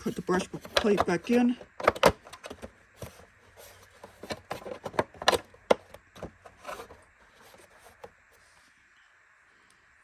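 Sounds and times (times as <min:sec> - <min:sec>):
plastic clicks and knocks: 0:00.4 - 0:08.1.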